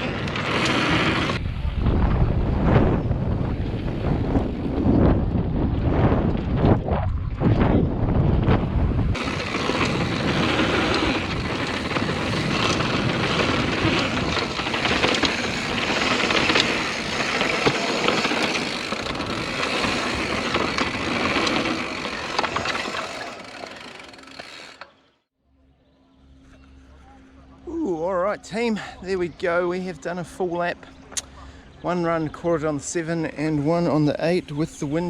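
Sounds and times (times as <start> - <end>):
bike rattling and clicking: 0.0 - 1.4, 9.1 - 25.2
bike tyres on dirt: 0.0 - 1.4, 9.1 - 25.1
wind rumble on microphone: 0.0 - 22.9.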